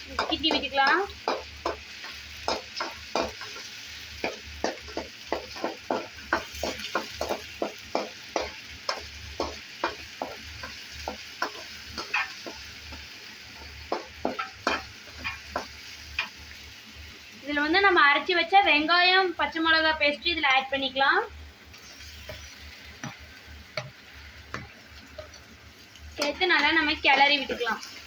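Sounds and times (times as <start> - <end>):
paste sizzling in oil: 0.0 - 28.0
ladle scraping and knocking pan: 13.9 - 16.3.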